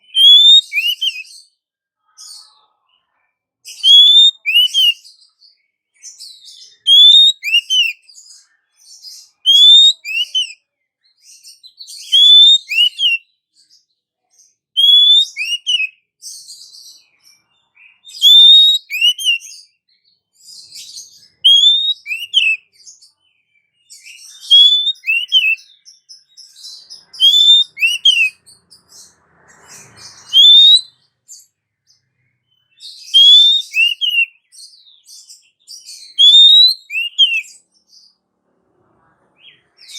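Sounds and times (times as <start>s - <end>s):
magpie-robin calling: 0.0s - 1.5s, 3.7s - 5.2s, 6.0s - 10.6s, 11.2s - 13.3s, 14.8s - 19.7s, 20.4s - 23.1s, 23.8s - 38.1s.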